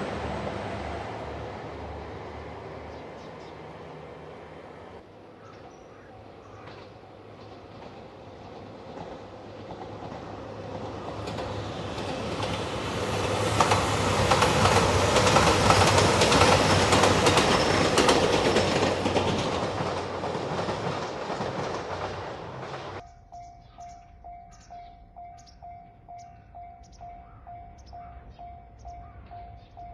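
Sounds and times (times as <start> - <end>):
diesel train passing: 0.0 - 29.9
wheels clacking over rail joints: 5.5 - 23.0.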